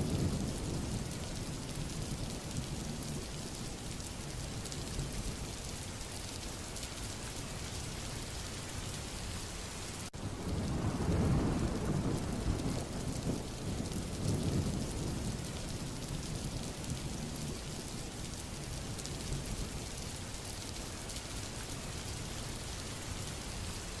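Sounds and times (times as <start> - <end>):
heavy rain: 0.0 - 24.0
thunder rumbling: 10.2 - 17.5.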